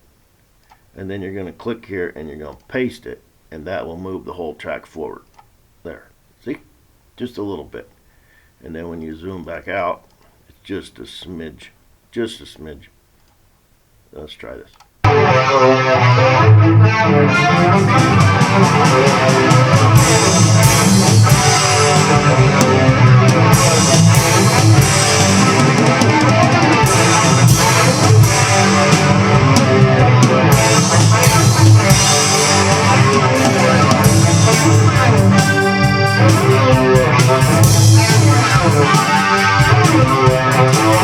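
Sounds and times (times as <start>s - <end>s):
guitars: 15.0s - 41.0s
rock music mix: 15.0s - 41.0s
reverbed drums: 17.3s - 41.0s.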